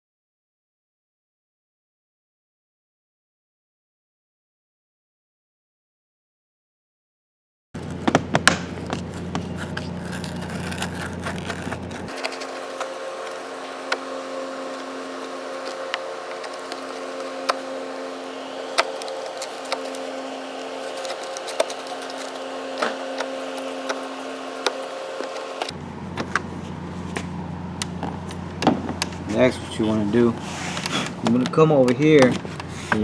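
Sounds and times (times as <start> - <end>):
steady hum: 7.8 - 31.6
hand tool clicks and scrapes: 8.8 - 25.7.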